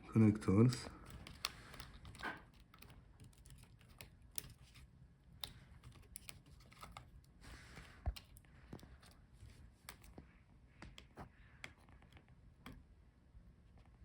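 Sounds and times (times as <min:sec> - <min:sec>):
small plastic clicks and taps: 0:00.8 - 0:09.2, 0:09.8 - 0:12.8.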